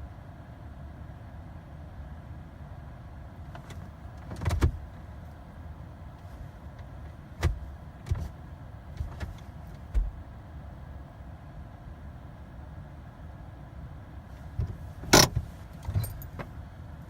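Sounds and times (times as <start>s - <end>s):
clicks and knocks in car cabin: 3.4s - 5.1s, 6.7s - 10.4s, 14.4s - 16.6s.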